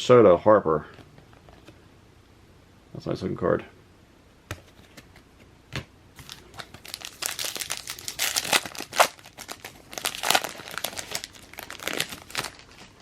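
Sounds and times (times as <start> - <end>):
foil wrapper crinkling and tearing: 6.2 - 13.0.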